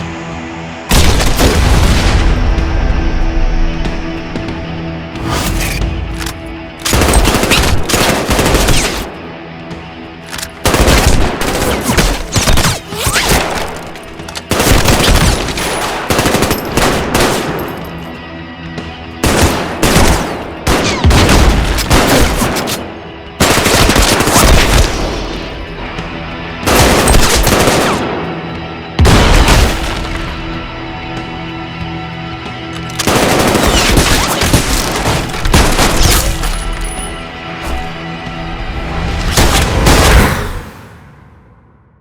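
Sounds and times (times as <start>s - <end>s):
background music: 0.0s - 42.0s
automatic gunfire bursts: 6.8s - 9.1s, 10.6s - 17.6s.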